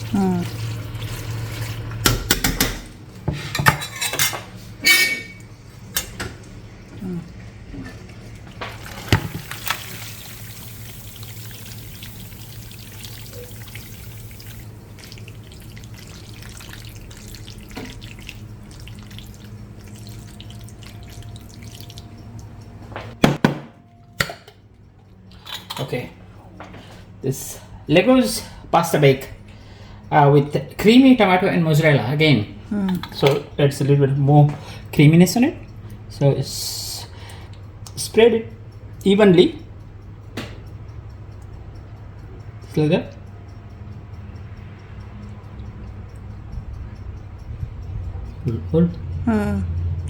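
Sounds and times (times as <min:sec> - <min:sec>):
utensil clinking against pan and dishes: 0:00.0 - 0:11.4, 0:24.2 - 0:27.0
tap running: 0:05.8 - 0:24.3.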